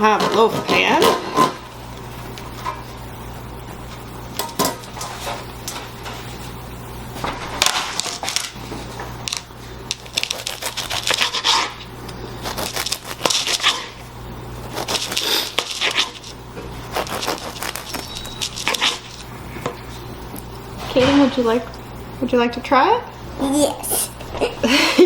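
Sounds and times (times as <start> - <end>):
steady low hum: 0.0 - 25.0
knife cutting bread on a board: 10.1 - 11.8, 12.4 - 14.0, 14.7 - 16.3, 16.9 - 19.2.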